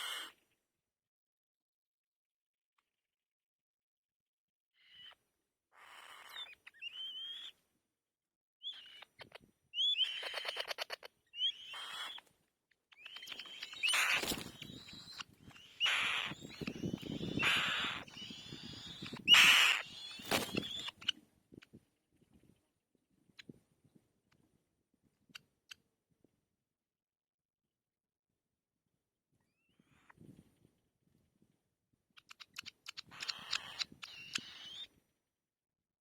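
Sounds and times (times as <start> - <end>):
young bird begging calls: 0.0 - 0.3, 9.8 - 12.2, 13.0 - 21.1, 33.1 - 34.9.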